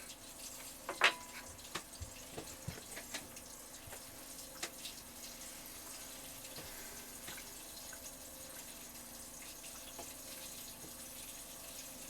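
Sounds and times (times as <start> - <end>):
low steady hum: 2.5 - 12.0.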